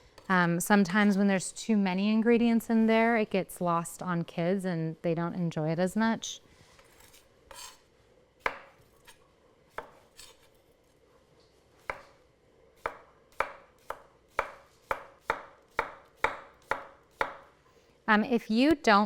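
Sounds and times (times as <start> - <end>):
knife slicing on cutting board: 6.8 - 9.2, 9.8 - 10.6.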